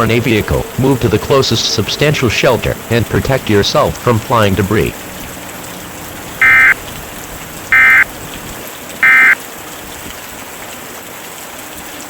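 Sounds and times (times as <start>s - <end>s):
digital data bursts: 6.4s - 6.8s, 7.7s - 8.0s, 9.0s - 9.4s.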